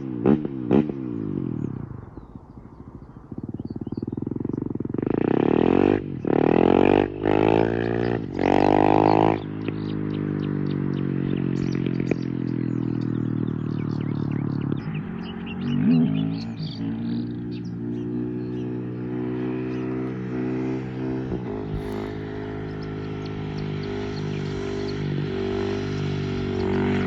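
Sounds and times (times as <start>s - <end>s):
motorcycle engine revving: 0.0s - 27.0s
exhaust crackles: 21.2s - 24.5s.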